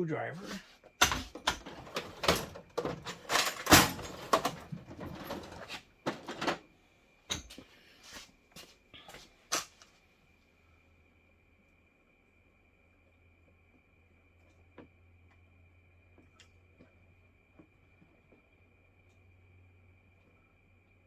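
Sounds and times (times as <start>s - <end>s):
tools and parts rattling: 1.0s - 6.6s.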